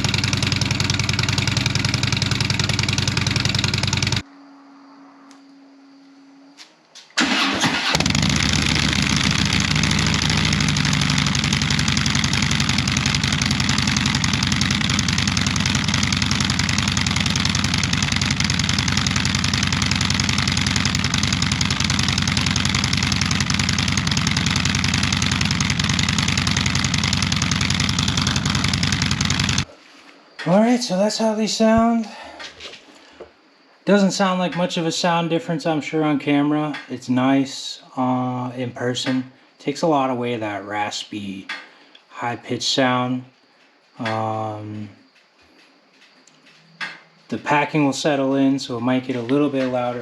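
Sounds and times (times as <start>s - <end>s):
motorcycle engine starting and idling: 0.0s - 4.3s, 7.2s - 29.7s.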